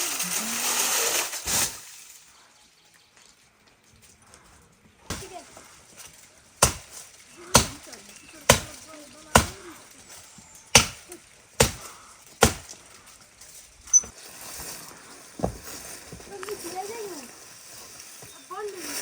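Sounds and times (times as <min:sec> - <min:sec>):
sharp chopping strikes: 0:06.6 - 0:07.9, 0:08.5 - 0:09.6, 0:10.7 - 0:12.7.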